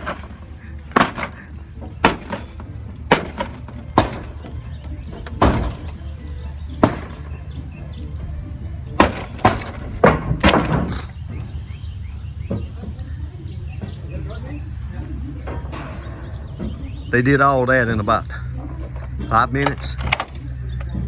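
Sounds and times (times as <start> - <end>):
debris crashing and breaking: 0.0 - 6.0
demolition hammer blows: 0.0 - 6.0.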